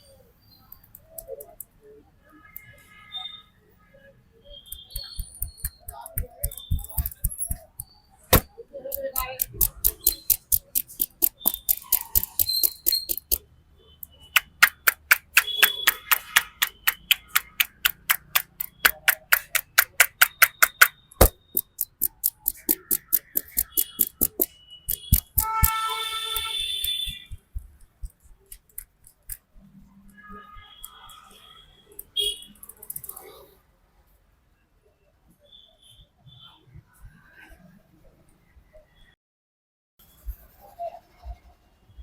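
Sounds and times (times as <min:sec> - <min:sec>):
hand slaps and claps on head: 0:14.4 - 0:21.4.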